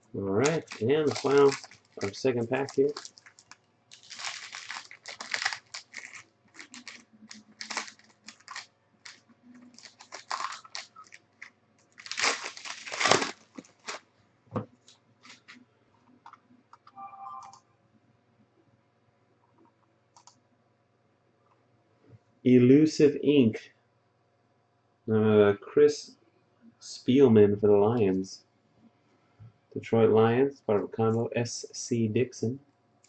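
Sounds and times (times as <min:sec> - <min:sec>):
cards being handled: 0:00.4 - 0:11.2
foil wrapper tearing and crinkling: 0:00.4 - 0:14.0.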